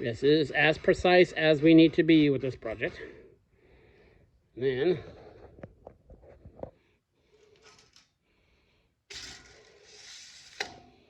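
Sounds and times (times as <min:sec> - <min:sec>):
steel scribe scratching steel: 0:09.1 - 0:11.0.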